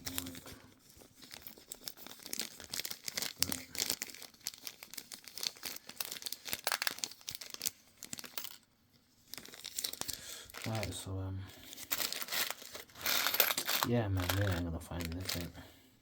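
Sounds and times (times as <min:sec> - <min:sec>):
metal hardware rattling in tin: 0:11.9 - 0:15.5.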